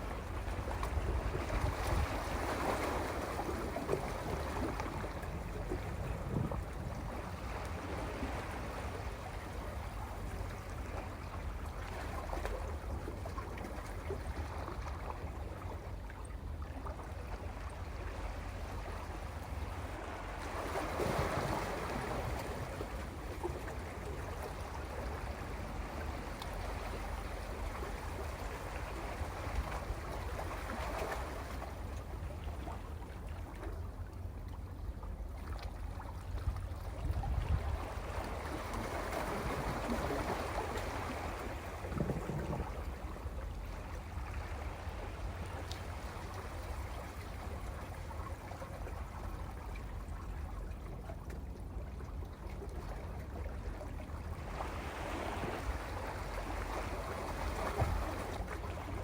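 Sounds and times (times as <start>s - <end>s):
sea waves on rocky shore: 0.0s - 14.4s, 18.1s - 32.8s, 37.0s - 49.8s, 53.9s - 59.0s.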